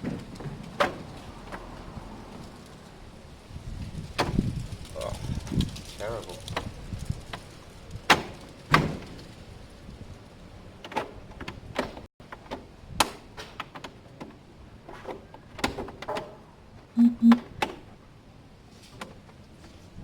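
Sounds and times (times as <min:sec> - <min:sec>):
short low beeps: 0:17.0 - 0:17.4.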